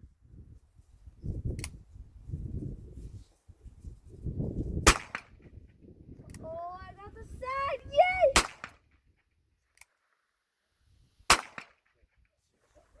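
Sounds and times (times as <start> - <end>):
pistol shots: 4.9 - 5.3, 8.3 - 8.8, 11.3 - 11.8.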